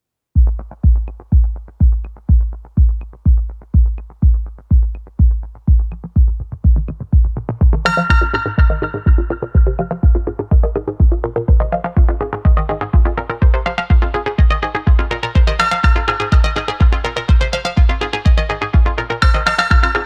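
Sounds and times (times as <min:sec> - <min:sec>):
electronic kick drum thumping: 0:00.4 - 0:20.0
sustained keyboard notes: 0:05.9 - 0:13.6.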